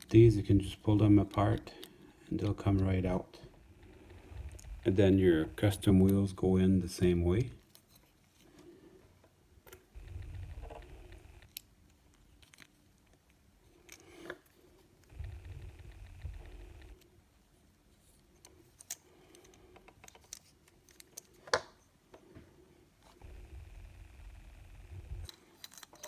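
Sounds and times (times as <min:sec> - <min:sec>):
dull low rumble: 0:03.5 - 0:06.1, 0:10.0 - 0:11.4, 0:15.1 - 0:17.0, 0:23.2 - 0:25.3
small plastic and metal parts clicking: 0:09.6 - 0:14.6, 0:18.0 - 0:22.2, 0:25.2 - 0:26.0.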